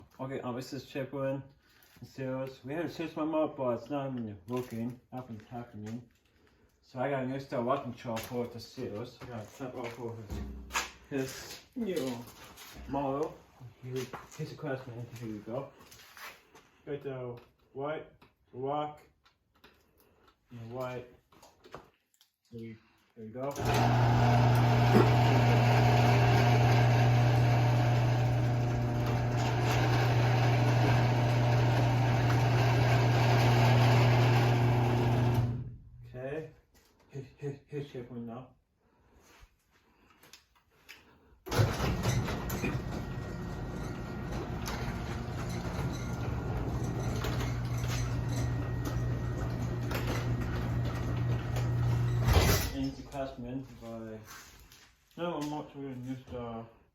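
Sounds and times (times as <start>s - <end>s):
garage door opener motor humming: 23.5s - 35.8s, 41.5s - 52.6s
door clicks and rattles: 41.5s - 52.7s.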